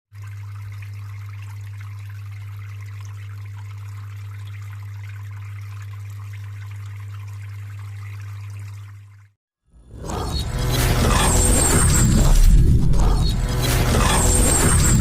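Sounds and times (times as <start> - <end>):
water trickling and splashing: 0.1 - 9.4.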